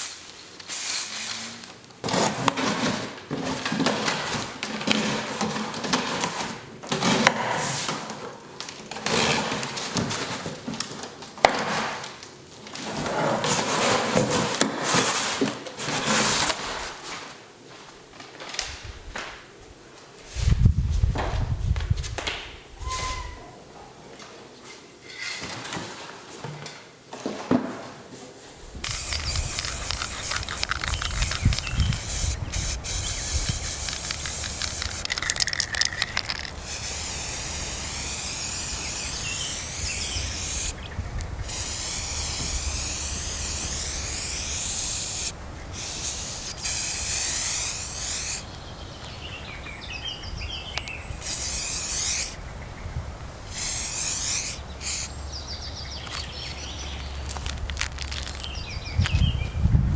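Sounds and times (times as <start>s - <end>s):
aerosol spray can hissing: 28.8s - 40.8s, 41.4s - 48.5s, 51.1s - 52.4s, 53.4s - 55.2s.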